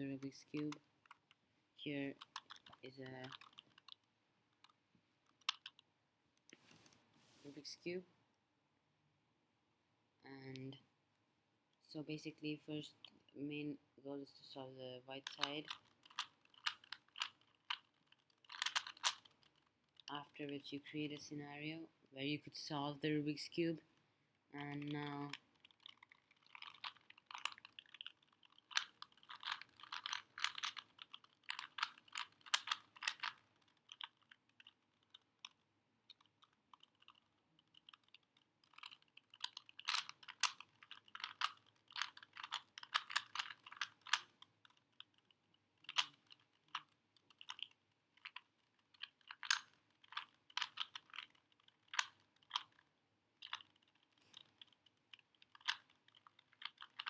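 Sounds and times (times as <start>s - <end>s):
plastic puzzle cube clicking: 0.0s - 7.0s, 15.2s - 21.3s, 24.6s - 57.0s.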